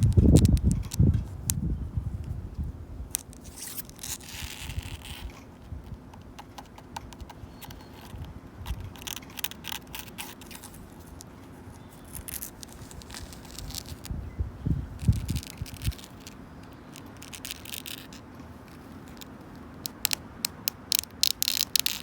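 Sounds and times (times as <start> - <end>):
fingernails scratching wood: 3.4 - 5.5.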